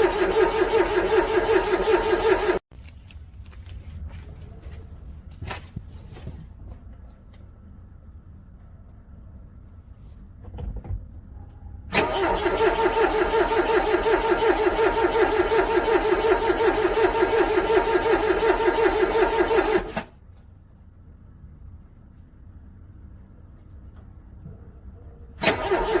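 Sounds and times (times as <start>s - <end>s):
car engine cranking: 0.0s - 2.6s, 11.9s - 20.2s, 25.4s - 26.0s.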